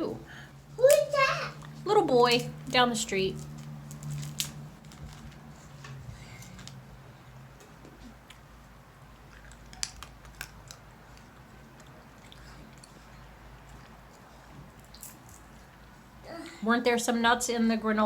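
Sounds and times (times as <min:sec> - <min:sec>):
peanut shells cracking: 0:00.9 - 0:05.4, 0:09.2 - 0:12.0.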